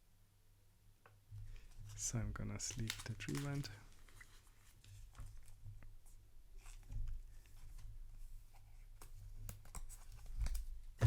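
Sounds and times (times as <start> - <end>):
card sleeve rustling and clicks: 2.6 - 5.6.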